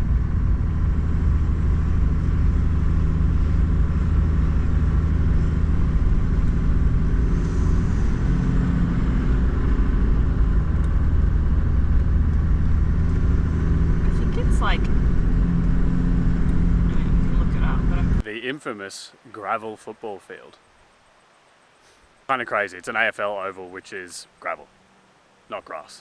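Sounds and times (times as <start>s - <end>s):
vehicle engine hum and road rumble: 0.0s - 18.3s.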